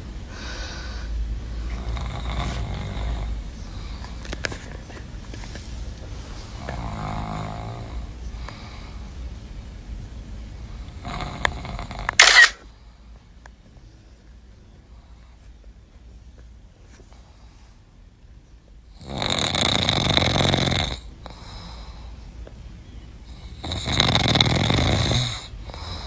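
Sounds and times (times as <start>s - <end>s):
harsh noisy burst: 12.1s - 12.6s.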